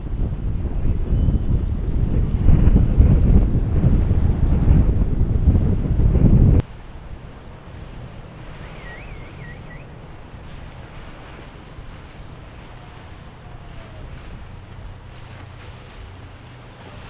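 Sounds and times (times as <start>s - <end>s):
boat engines rumbling: 0.0s - 17.0s
waves washing: 0.0s - 17.0s
wind buffeting microphone: 0.0s - 17.0s
short warbling whistle: 8.6s - 9.9s.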